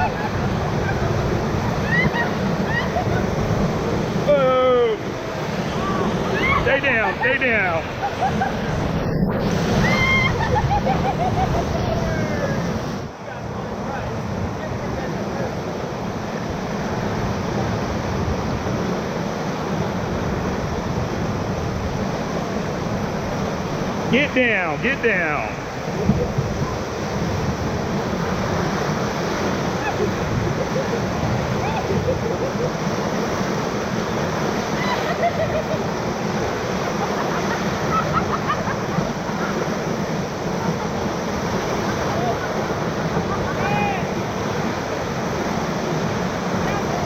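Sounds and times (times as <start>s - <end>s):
whitewater rushing: 0.0s - 47.0s
faint shouts: 43.5s - 44.2s.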